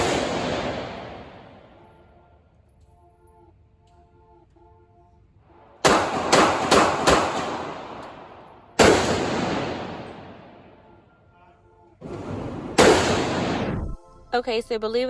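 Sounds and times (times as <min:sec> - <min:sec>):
gunshots with echo: 0:00.0 - 0:01.8, 0:05.8 - 0:10.9, 0:12.0 - 0:13.9.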